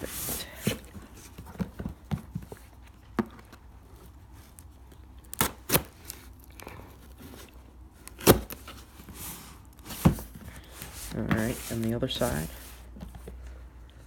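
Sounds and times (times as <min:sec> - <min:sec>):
knife cutting cardboard box seal: 0:05.3 - 0:06.3, 0:07.2 - 0:11.7.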